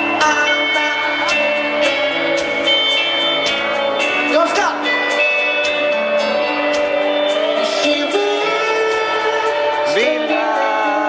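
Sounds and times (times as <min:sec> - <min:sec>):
guitar playing: 0:00.0 - 0:11.0
person singing long notes: 0:06.0 - 0:11.0.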